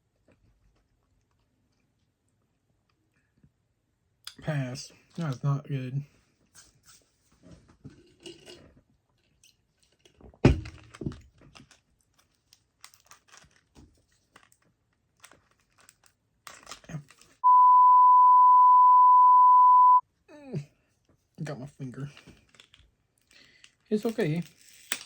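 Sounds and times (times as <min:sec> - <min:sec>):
snack wrappers rustling: 0:10.9 - 0:17.4, 0:22.2 - 0:25.0
censor bleep: 0:17.4 - 0:20.0.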